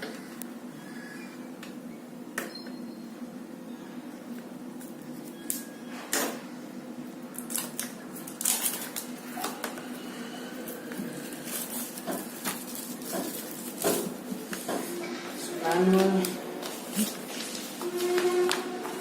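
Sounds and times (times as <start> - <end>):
plastic crinkling rustles: 7.3 - 9.7, 11.0 - 14.7, 15.8 - 19.0
knife cutting plastic wrapping: 7.4 - 9.6.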